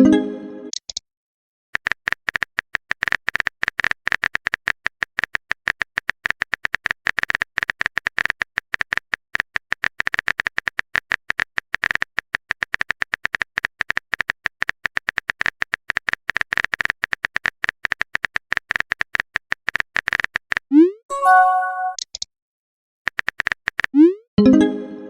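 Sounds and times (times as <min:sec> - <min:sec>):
phone keyboard typing clicks: 0:01.8 - 0:20.6, 0:23.1 - 0:23.9.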